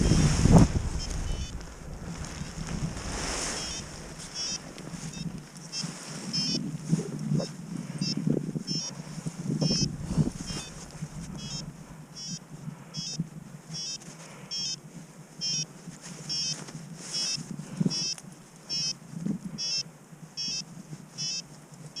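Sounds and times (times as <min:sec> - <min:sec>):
wind on microphone: 0:00.0 - 0:13.8
variometer high chirping beeps: 0:01.0 - 0:01.6, 0:03.6 - 0:06.6, 0:08.0 - 0:08.9, 0:09.6 - 0:10.7, 0:11.4 - 0:12.4, 0:13.0 - 0:13.2, 0:13.8 - 0:14.8, 0:15.4 - 0:15.6, 0:16.3 - 0:16.5, 0:19.6 - 0:19.8, 0:20.4 - 0:20.6, 0:21.2 - 0:21.4.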